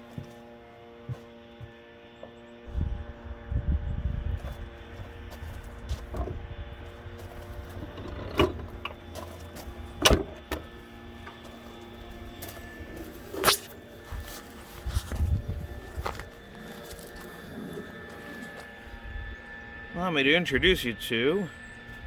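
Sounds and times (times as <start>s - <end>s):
electric motor whining: 0.0s - 22.0s.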